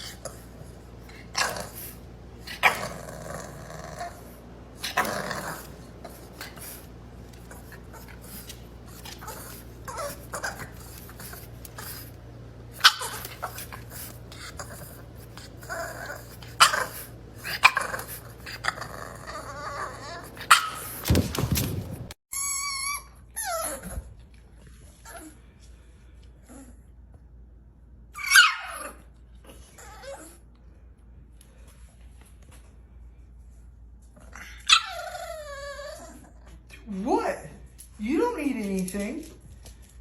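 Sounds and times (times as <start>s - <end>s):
puppy growling: 0.0s - 22.2s, 34.1s - 36.8s
puppy whining: 0.0s - 25.5s, 28.2s - 30.5s, 34.2s - 36.8s.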